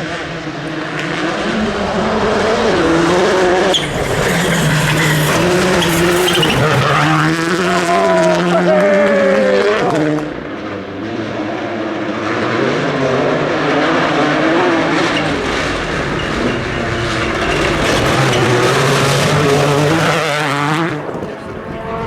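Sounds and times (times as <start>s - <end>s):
rally car engine revving: 0.0s - 22.0s
tyres rushing on gravel: 0.6s - 9.4s, 13.8s - 21.5s.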